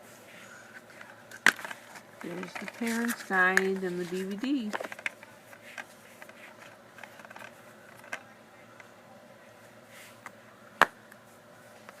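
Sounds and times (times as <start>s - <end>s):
plastic case clicks and rustles: 1.0s - 8.2s.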